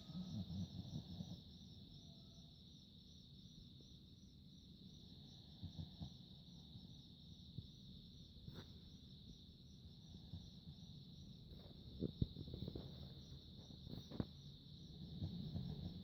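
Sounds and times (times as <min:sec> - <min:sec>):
dog snoring: 0:00.0 - 0:01.5, 0:05.2 - 0:06.4, 0:14.9 - 0:16.0.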